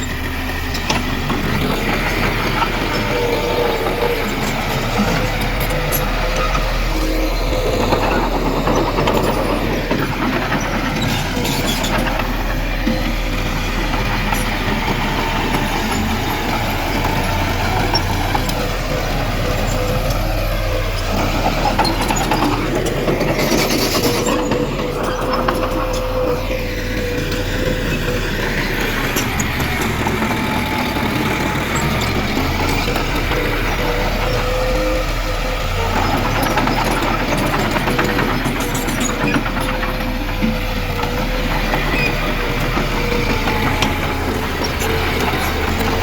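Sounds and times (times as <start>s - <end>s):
heavy diesel machinery running: 0.0s - 46.0s.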